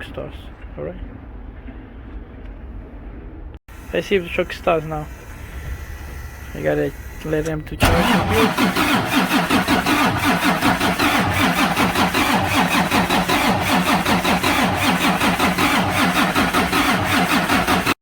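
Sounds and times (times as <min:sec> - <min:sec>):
diesel engine cranking: 0:03.7 - 0:18.0.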